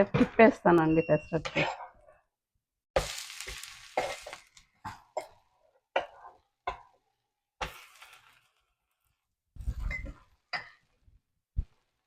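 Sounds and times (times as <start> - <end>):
batter sizzling on griddle: 3.0 - 4.8, 7.6 - 9.9
spatula scraping griddle: 7.6 - 8.6.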